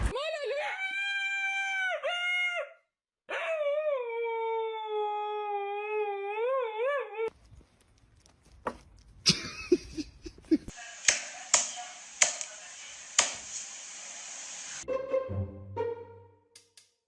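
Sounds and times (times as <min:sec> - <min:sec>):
dog howling: 0:03.3 - 0:07.3.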